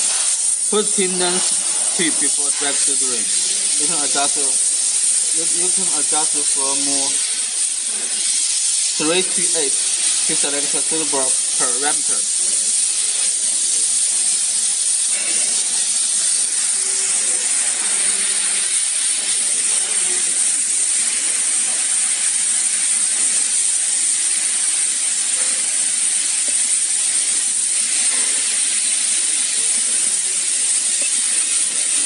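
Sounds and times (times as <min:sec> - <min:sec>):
high-pitched hiss: 0:00.0 - 0:32.0.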